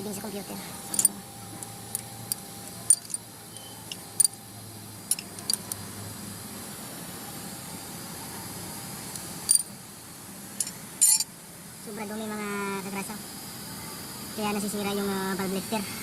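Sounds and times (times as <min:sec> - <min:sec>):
steady low hum: 0:00.0 - 0:16.0
metallic clinks of tools: 0:00.9 - 0:01.2, 0:01.9 - 0:04.4, 0:05.1 - 0:05.8, 0:09.5 - 0:09.7, 0:10.6 - 0:11.3.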